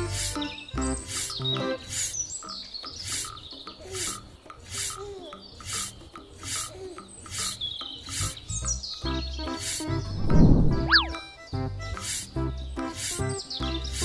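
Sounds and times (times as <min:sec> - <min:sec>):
children's background music: 0:00.0 - 0:14.0
shaker-like scrape: 0:12.9 - 0:14.0.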